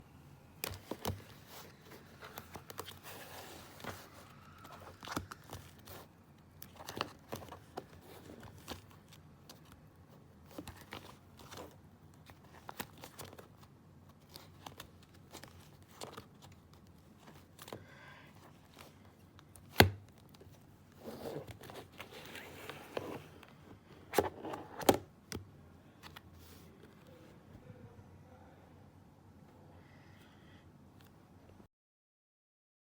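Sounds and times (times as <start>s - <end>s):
pages rustling: 0.6s - 17.8s, 18.4s - 25.4s
plastic sleeves crinkling: 0.6s - 17.8s.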